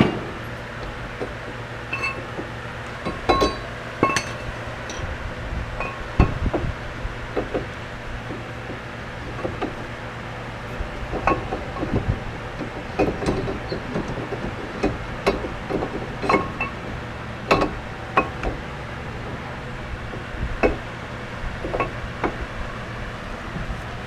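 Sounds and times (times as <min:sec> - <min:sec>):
steady low hum: 0:00.0 - 0:24.0
metal tools clinking: 0:03.1 - 0:05.1.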